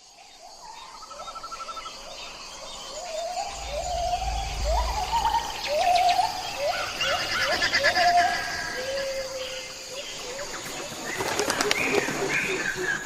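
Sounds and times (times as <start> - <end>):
low rumble: 3.1 - 7.0
high-pitched buzz: 3.5 - 6.5.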